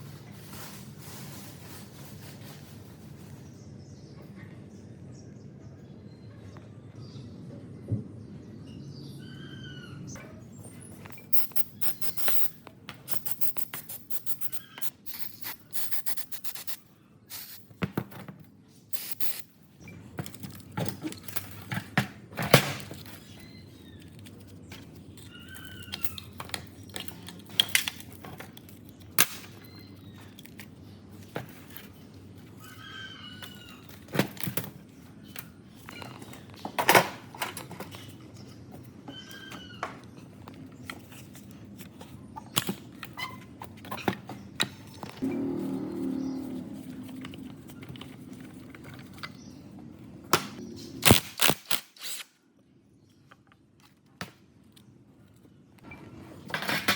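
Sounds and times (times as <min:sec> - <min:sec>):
bird chirping: 0:08.6 - 0:17.7, 0:44.8 - 0:47.1.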